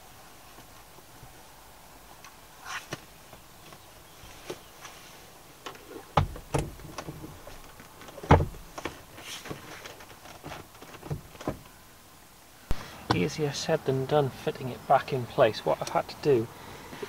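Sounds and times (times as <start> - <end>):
heavy thumps: 6.1 - 9.6
car seat parts knocking: 6.2 - 9.0.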